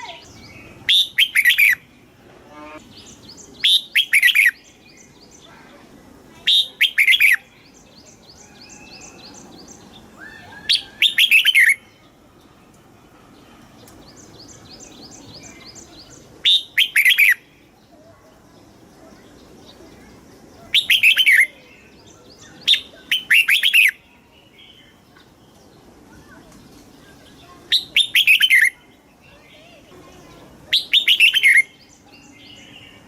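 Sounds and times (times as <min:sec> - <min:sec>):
bird warbling phrases: 0:00.0 - 0:01.9, 0:05.4 - 0:09.5, 0:10.1 - 0:11.9, 0:15.2 - 0:18.2, 0:20.6 - 0:24.0, 0:27.2 - 0:32.9
rapid bird chirping: 0:00.0 - 0:01.9, 0:02.8 - 0:05.6, 0:06.5 - 0:12.2, 0:14.0 - 0:17.8, 0:18.4 - 0:25.8, 0:26.9 - 0:29.8, 0:30.7 - 0:33.0.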